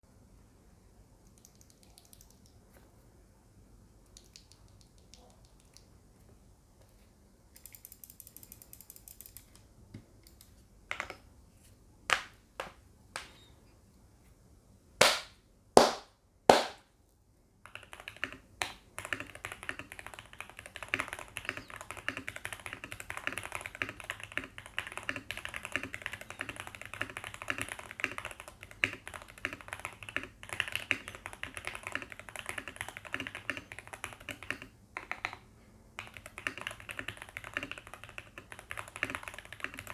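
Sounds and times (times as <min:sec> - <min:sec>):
mechanical keyboard typing: 0:01.4 - 0:02.6, 0:07.6 - 0:09.6, 0:17.6 - 0:35.4, 0:36.0 - 0:39.9
heavy keystrokes: 0:36.0 - 0:39.9.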